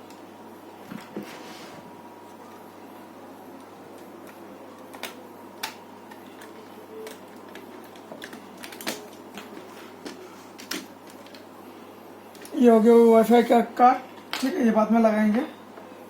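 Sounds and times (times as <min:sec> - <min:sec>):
plastic laptop parts clicking: 0:04.2 - 0:11.4.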